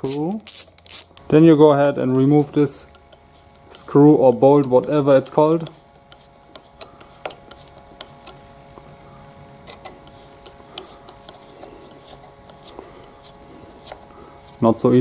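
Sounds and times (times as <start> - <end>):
faint steady hum: 0.0 - 15.0
hand tool clicks and taps: 4.3 - 5.8.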